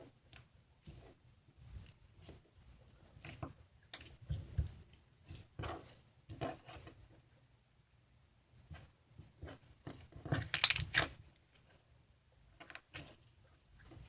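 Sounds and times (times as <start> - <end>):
slime squishing: 10.0 - 11.2.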